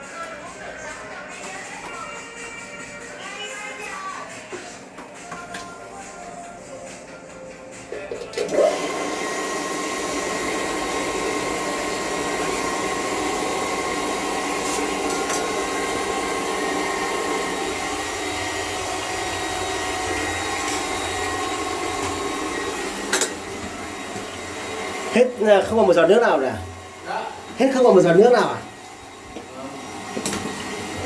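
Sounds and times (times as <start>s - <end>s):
electric water pump running: 8.2s - 31.0s.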